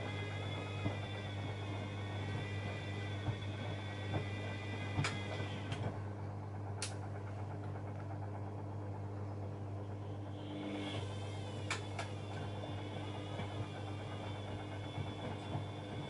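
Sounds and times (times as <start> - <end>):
high motor whine: 0.0 - 6.3, 9.4 - 16.0
washing machine low hum: 0.0 - 16.0.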